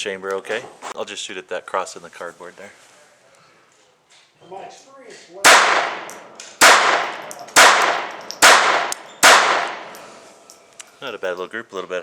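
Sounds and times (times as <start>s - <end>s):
pistol shots with echo: 5.4s - 10.2s.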